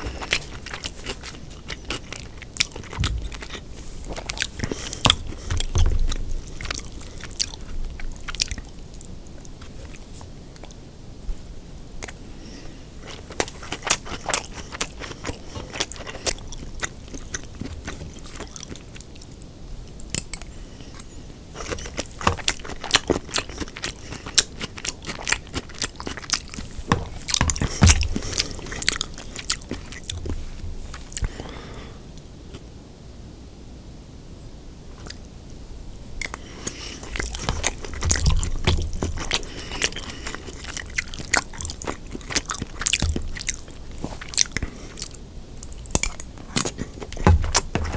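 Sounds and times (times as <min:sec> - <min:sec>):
crunching bites: 0:00.0 - 0:08.7, 0:20.0 - 0:31.4, 0:36.2 - 0:47.9
wet chewing: 0:00.0 - 0:10.8, 0:12.0 - 0:31.7, 0:36.2 - 0:47.9.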